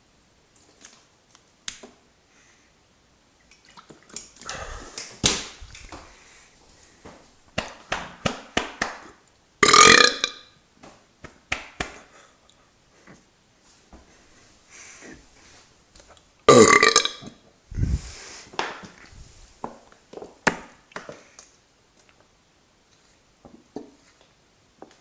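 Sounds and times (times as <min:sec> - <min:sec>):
person burping: 0:09.6 - 0:10.5, 0:16.5 - 0:17.4.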